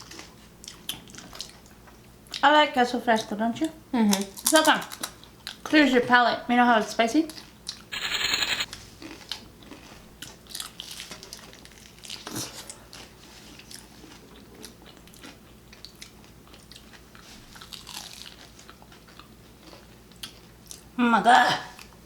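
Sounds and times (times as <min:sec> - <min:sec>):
person chewing and crunching: 0:13.6 - 0:20.8.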